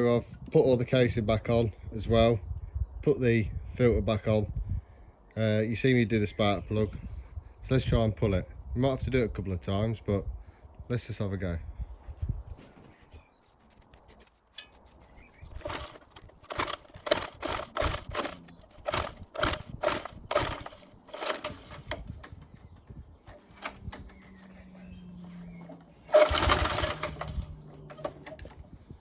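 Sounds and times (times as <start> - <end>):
lawn mower recoil starter pulls: 14.6 - 22.4, 23.3 - 24.2, 25.7 - 28.6.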